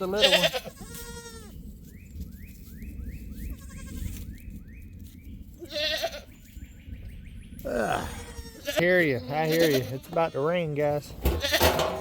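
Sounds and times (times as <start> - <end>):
goats bleating: 0.0 - 1.5, 5.6 - 6.3, 7.7 - 12.0.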